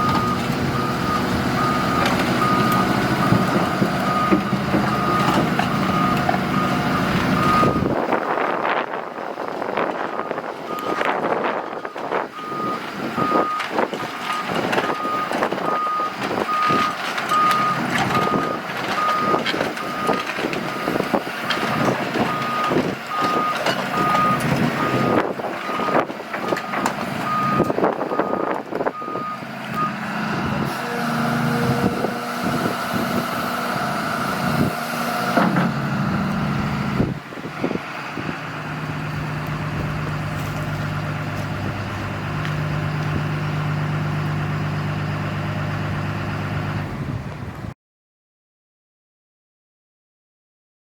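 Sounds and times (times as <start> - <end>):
excavator travel alarm beeping: 0.0 - 8.4, 10.1 - 21.1, 21.8 - 30.0
diesel engine running: 0.0 - 47.7.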